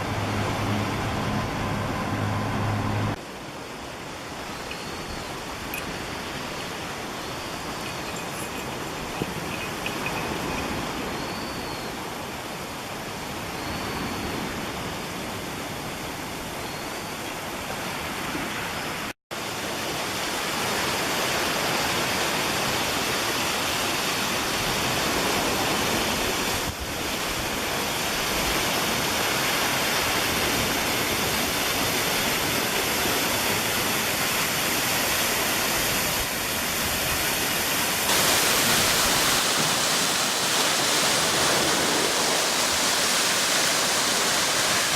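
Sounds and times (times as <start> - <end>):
waterfall rushing: 0.0 - 11.2, 27.1 - 44.9.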